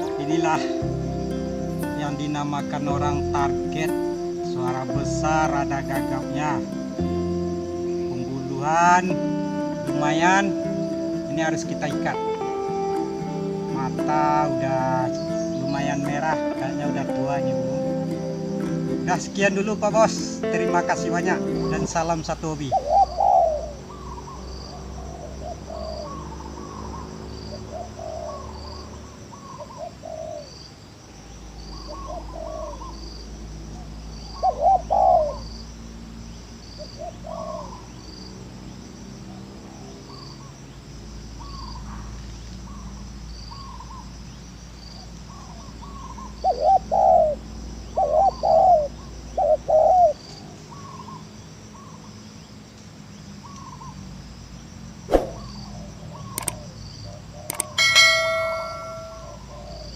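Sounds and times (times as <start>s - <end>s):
insect chirping: 0.0s - 59.9s
dove cooing: 22.6s - 30.6s, 31.7s - 33.1s, 34.2s - 35.5s, 36.8s - 38.0s, 45.3s - 51.2s, 55.2s - 59.9s.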